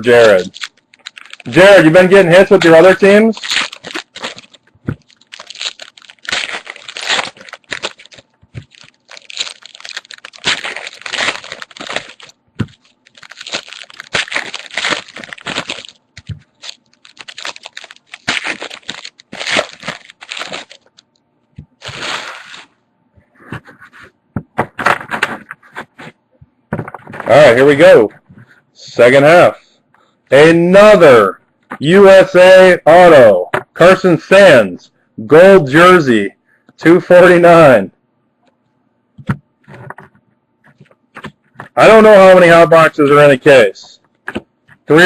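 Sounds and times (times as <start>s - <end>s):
card packs being torn open: 0.0s - 21.1s, 21.7s - 22.7s
wrappers crinkling: 0.0s - 22.8s.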